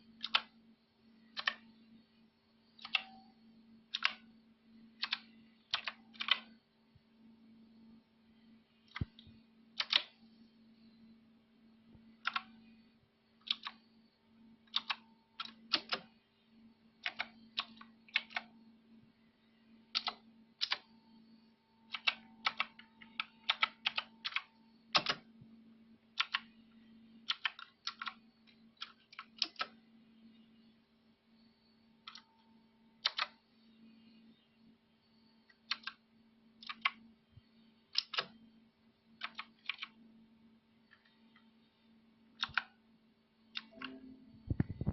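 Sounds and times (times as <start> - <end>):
faint steady hum: 0.0 - 44.9
mechanical keyboard key clicks: 13.4 - 13.8, 27.3 - 28.2, 33.0 - 33.3, 35.7 - 36.0, 38.0 - 38.3, 39.2 - 39.9, 42.4 - 42.7.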